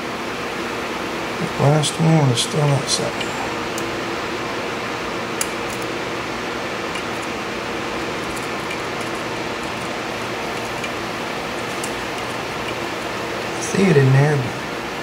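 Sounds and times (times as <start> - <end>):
fan-like hiss and hum: 0.0 - 15.0
lock picks clicking: 5.4 - 6.0, 6.9 - 7.4, 8.0 - 13.2.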